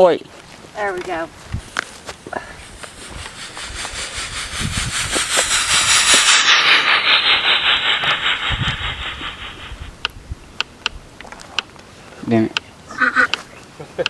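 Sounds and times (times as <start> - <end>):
pulsing radio static: 2.6 - 9.9.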